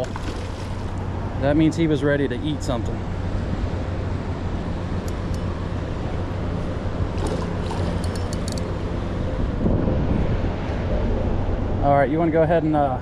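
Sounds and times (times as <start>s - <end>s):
low engine drone: 0.0s - 13.0s
wind on microphone: 7.0s - 11.8s.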